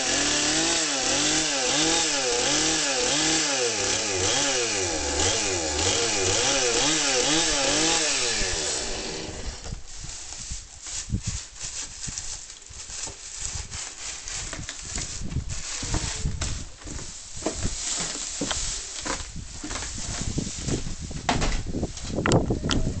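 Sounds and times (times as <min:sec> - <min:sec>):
chainsaw cutting straw bale: 0:00.0 - 0:10.5.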